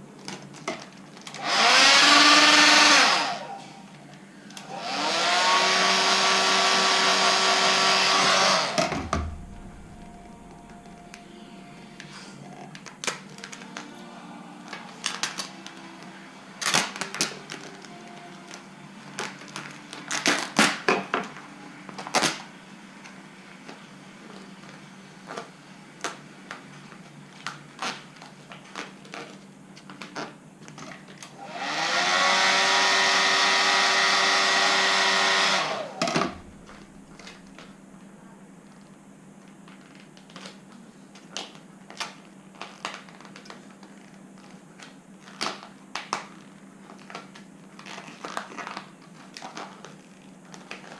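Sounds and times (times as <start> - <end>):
hot-air blower whining: 1.3 - 26.6, 31.0 - 38.4.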